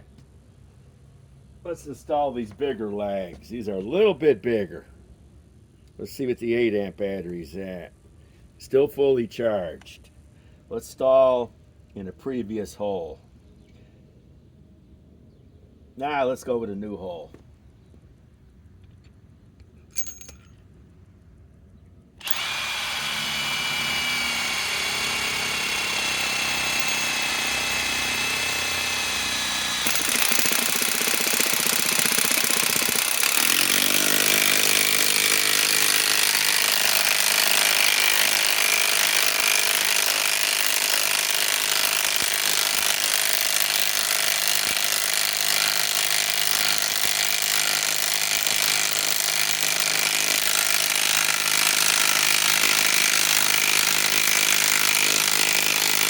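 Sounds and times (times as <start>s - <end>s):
impact wrench driving screw into wood: 22.2s - 56.0s.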